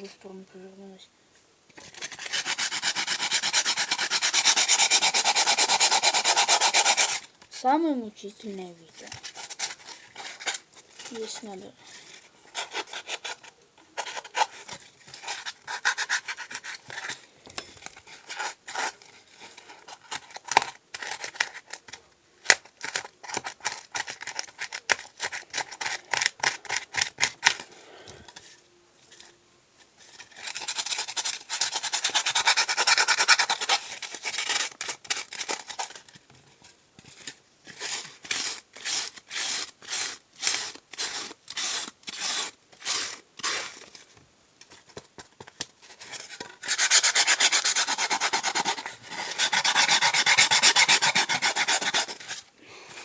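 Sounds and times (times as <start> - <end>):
sandpaper rubbing on foam: 1.9 - 7.3, 9.0 - 17.2, 30.2 - 36.0, 37.6 - 43.8, 46.0 - 52.4.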